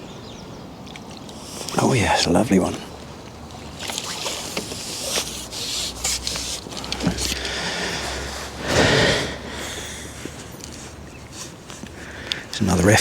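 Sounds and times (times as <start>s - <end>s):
water splashing and sloshing: 0.7s - 12.2s.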